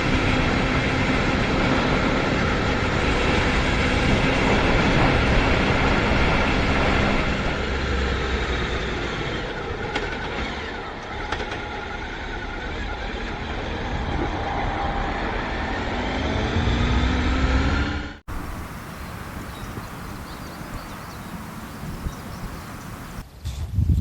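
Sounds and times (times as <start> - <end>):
vehicle running: 0.0 - 23.2
engine tone climbing in pitch: 12.0 - 23.2.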